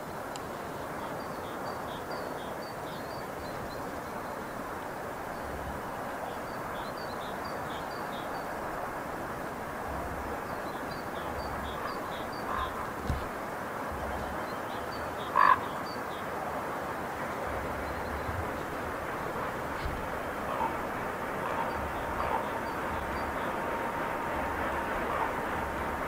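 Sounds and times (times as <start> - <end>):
freight train rolling: 3.5 - 15.2, 16.4 - 26.0
small birds chirping: 10.2 - 16.3.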